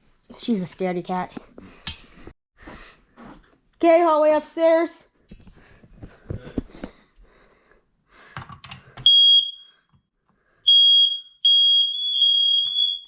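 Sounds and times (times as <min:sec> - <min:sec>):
smoke alarm beeping: 0:09.0 - 0:09.9, 0:10.6 - 0:13.0.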